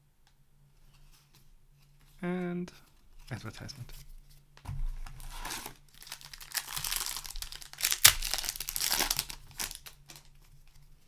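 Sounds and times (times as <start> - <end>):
plastic wrapper crinkling: 5.2 - 10.4
wrapper tearing open: 5.2 - 10.4.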